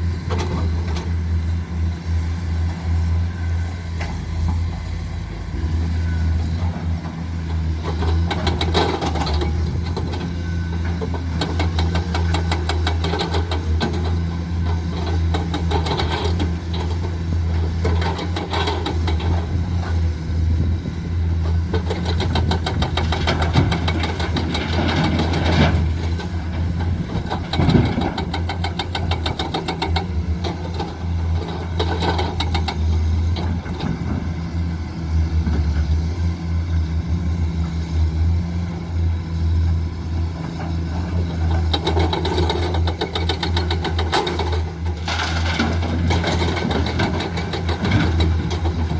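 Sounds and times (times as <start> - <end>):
heavy diesel engines running: 0.0 - 48.9
material clattering into truck: 45.0 - 47.2.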